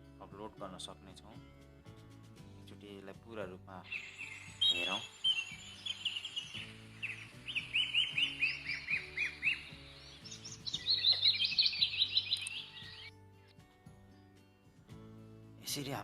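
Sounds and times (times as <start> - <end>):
soft music with low notes: 0.0 - 16.0
songbird chirping: 3.7 - 13.1.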